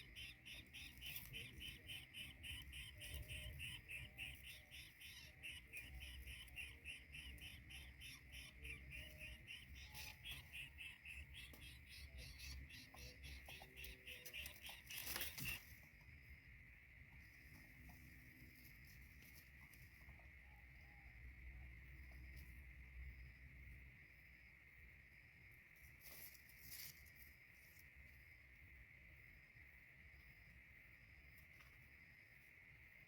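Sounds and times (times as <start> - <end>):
rapid high-pitched chirps: 0.0 - 15.6.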